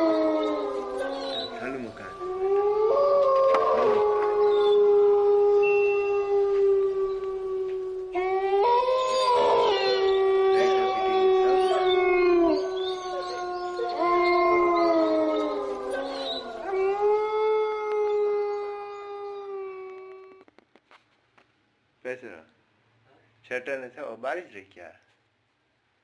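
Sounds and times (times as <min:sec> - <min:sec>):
overlapping drawn-out howls: 0:00.0 - 0:18.8.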